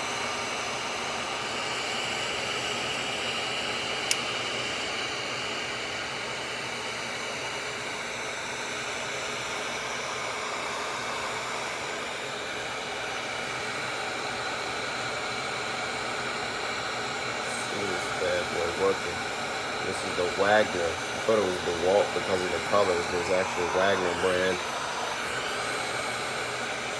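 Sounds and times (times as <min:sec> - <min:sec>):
heat gun blowing air: 0:09.2 - 0:26.9.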